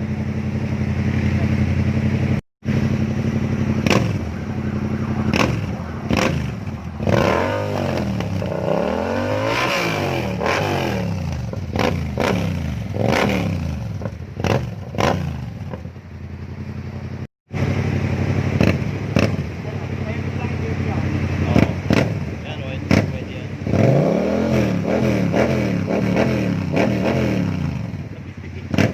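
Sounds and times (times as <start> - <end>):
motorcycle engine revving: 0.0 - 28.9
exhaust cracks: 2.6 - 16.1, 17.5 - 24.0.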